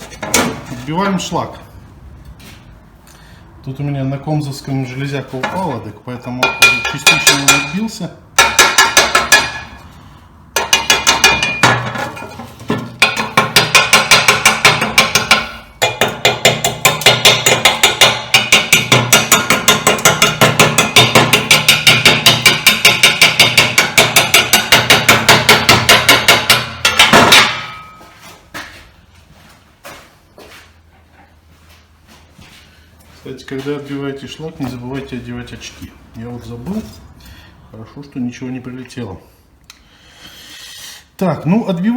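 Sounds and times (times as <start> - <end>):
hammer striking metal: 6.4 - 9.8, 10.5 - 28.2.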